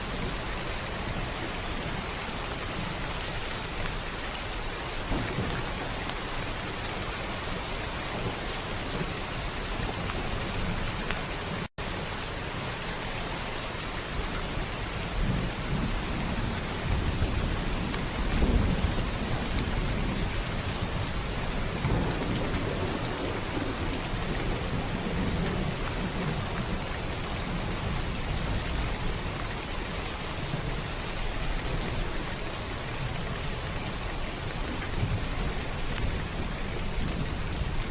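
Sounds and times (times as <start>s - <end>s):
heavy rain on a roof: 0.0s - 37.9s
thunder rolling: 4.9s - 7.2s, 15.2s - 28.4s.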